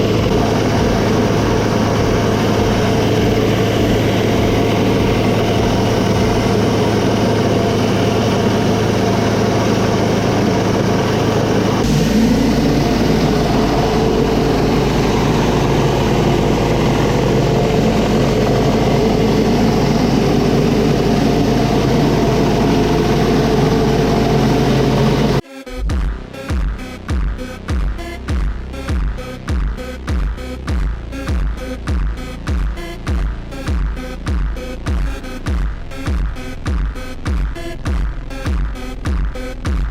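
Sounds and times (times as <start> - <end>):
pressure washer engine running: 0.0 - 25.4
deeper hum: 0.0 - 39.9.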